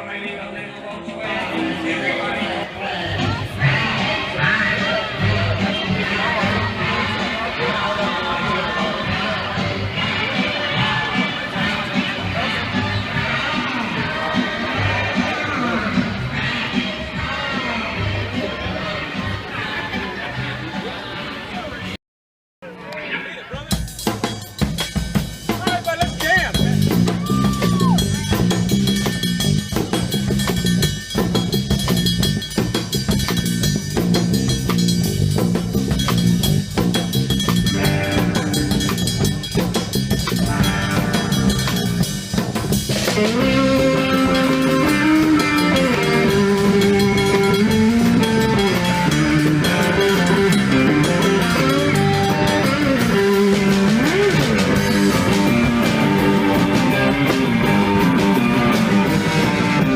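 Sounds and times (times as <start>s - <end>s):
drum kit beat with bass: 3.1s - 18.6s, 23.5s - 59.9s
electric guitar melody: 37.4s - 42.1s, 42.8s - 59.9s.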